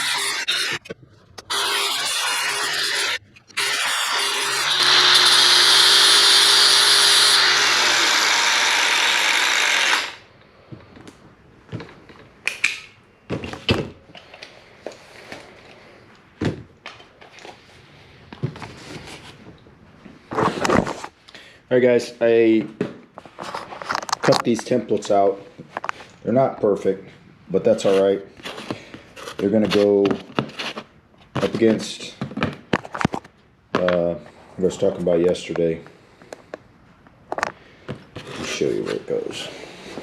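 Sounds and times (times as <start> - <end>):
handheld power tool running: 0.0 - 0.8, 1.5 - 10.2.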